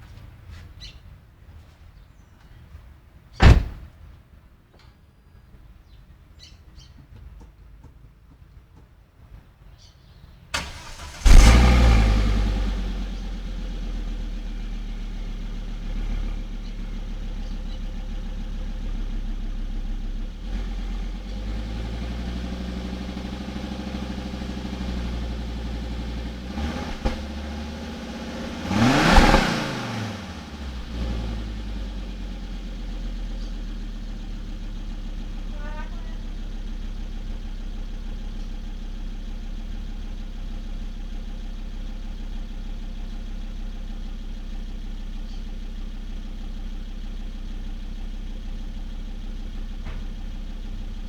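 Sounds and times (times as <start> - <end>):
car engine starting and idling: 10.4 - 51.0
ignition click: 10.6 - 12.3
engine revving: 10.6 - 36.2.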